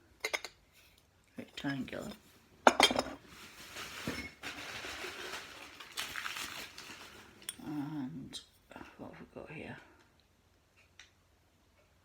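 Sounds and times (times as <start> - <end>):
packing material rustling: 3.2 - 7.5.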